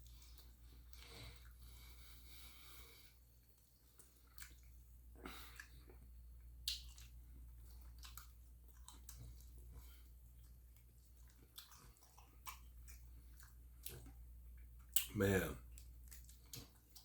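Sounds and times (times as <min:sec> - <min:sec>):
person chewing: 0:00.0 - 0:15.1, 0:15.7 - 0:17.0
lip smacks: 0:03.5 - 0:17.0.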